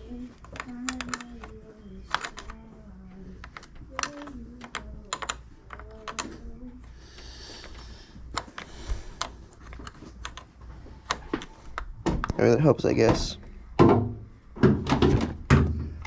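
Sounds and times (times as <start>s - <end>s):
clicks on plastic parts: 0.4s - 2.6s, 3.4s - 6.4s.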